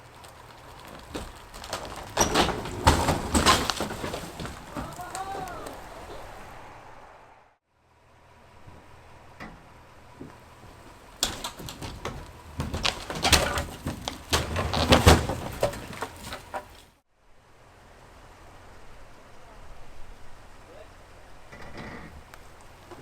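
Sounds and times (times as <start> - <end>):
demolition knocks and bangs: 0.0 - 6.5, 10.2 - 16.9.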